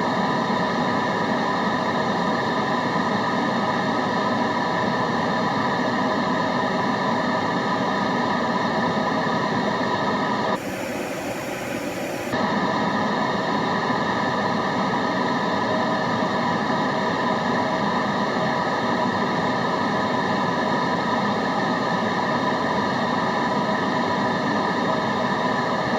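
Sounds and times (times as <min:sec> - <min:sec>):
white noise hiss: 0:10.5 - 0:12.4.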